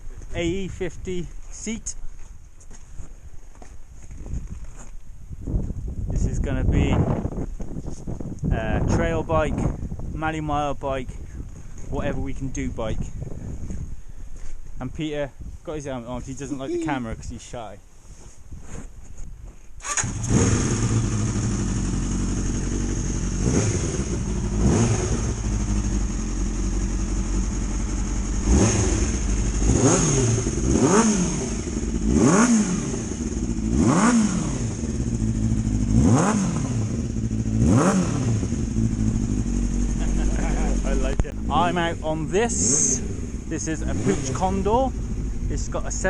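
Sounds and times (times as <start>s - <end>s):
motorcycle engine revving: 19.8s - 46.0s.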